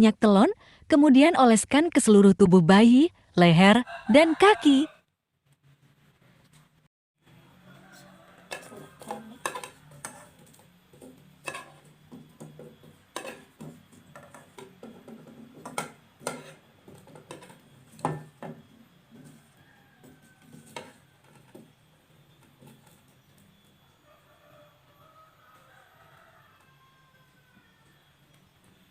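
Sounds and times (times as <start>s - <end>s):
metal spoon clinking against dish: 8.4s - 14.8s.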